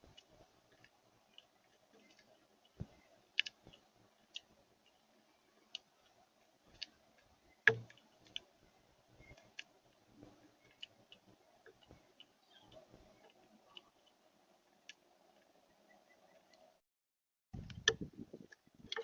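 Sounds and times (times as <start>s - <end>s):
birds pecking at feeder: 0.0s - 16.8s.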